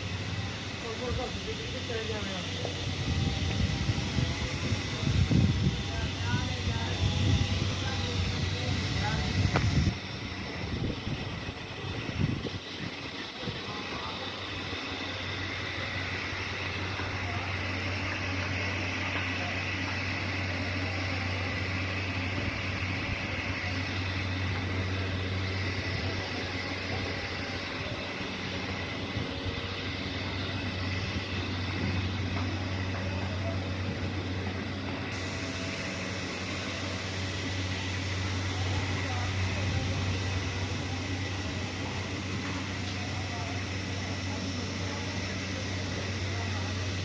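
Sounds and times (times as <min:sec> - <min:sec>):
woodworking saw machine running: 0:00.0 - 0:47.0.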